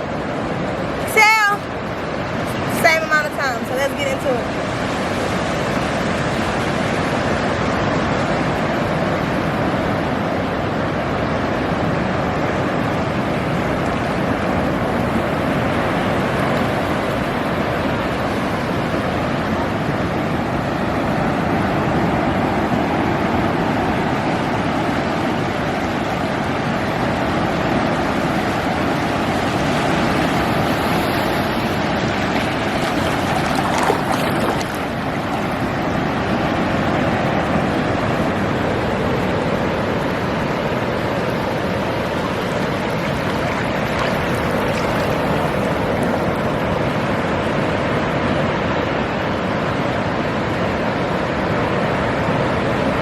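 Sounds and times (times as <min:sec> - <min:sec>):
ocean surf washing onto beach: 0:00.0 - 0:53.0.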